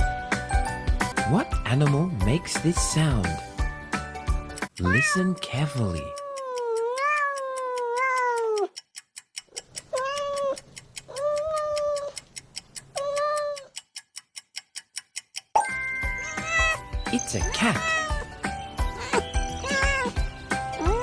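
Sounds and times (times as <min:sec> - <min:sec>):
fast clock-like ticking: 0:01.0 - 0:21.0
cat meowing: 0:04.8 - 0:08.8, 0:09.9 - 0:12.2, 0:12.9 - 0:13.8, 0:15.7 - 0:16.9, 0:17.5 - 0:21.0.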